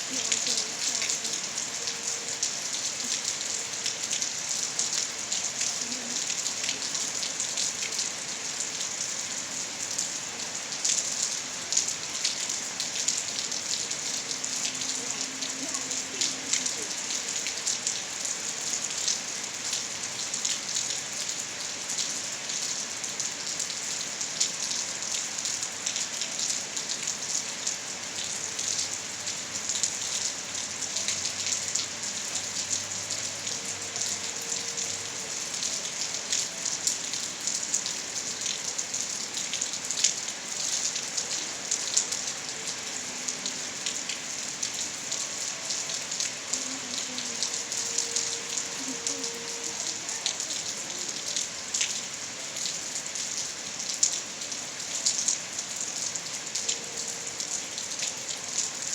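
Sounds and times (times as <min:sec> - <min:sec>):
rain pattering on surfaces: 0:00.0 - 0:58.9.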